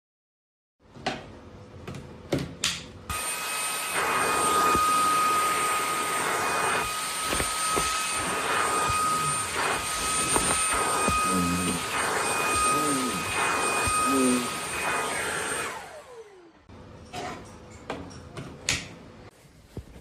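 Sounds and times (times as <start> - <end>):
vacuum cleaner motor whine: 3.1 - 16.7.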